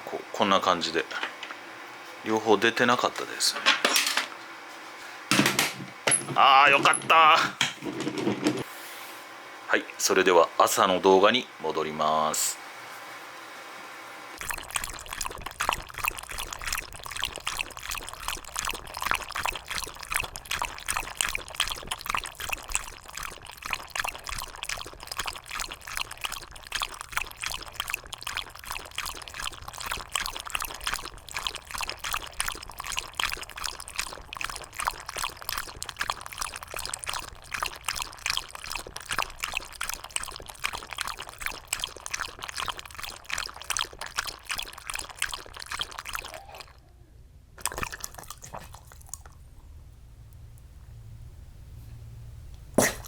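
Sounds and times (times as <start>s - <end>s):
water splashing and trickling: 14.4s - 46.7s
dog lapping water: 14.4s - 46.8s, 47.6s - 49.4s, 52.8s - 53.0s.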